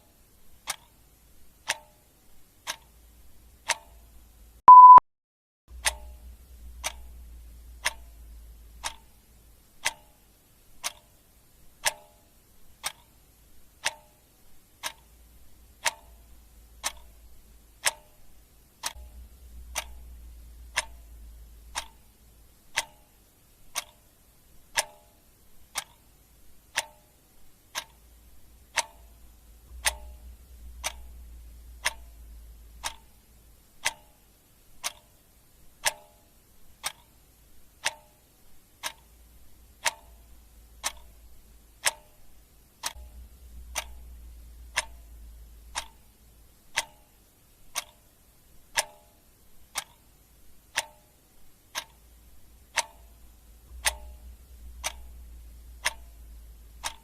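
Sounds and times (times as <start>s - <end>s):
clock ticking: 0.0s - 5.0s, 5.7s - 57.0s
electronic timer beep: 4.7s - 5.0s
faint low rumble: 5.7s - 11.8s, 14.4s - 24.8s, 25.4s - 37.8s, 38.4s - 57.0s.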